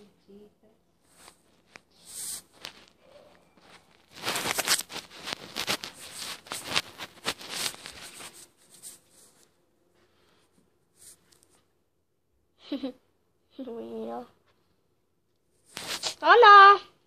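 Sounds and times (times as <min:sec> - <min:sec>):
rustling and crinkling handling: 0:01.0 - 0:10.4, 0:15.6 - 0:16.6.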